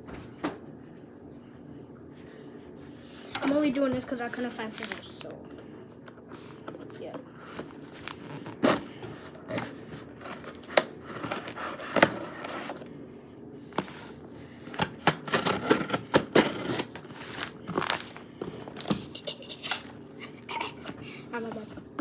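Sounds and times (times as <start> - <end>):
packaging crinkling: 4.4 - 5.3, 7.5 - 12.8, 13.8 - 19.8
knife scraping package: 6.4 - 12.9, 13.8 - 19.9.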